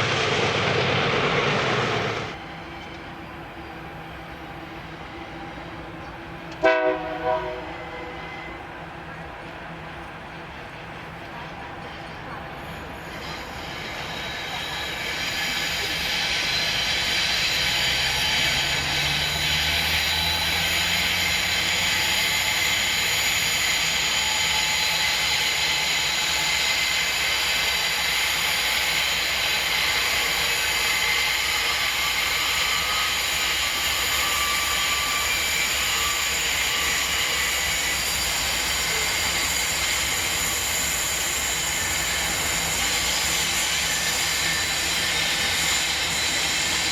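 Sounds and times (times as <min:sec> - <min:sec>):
locomotive engine hum: 0:00.0 - 0:46.9
high-pitched wheel squeal: 0:12.6 - 0:46.9.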